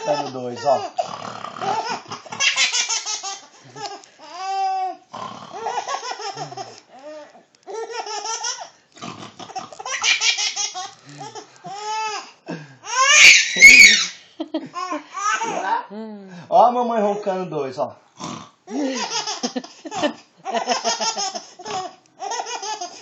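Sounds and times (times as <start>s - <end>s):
high-pitched laughter: 13.1s - 14.7s.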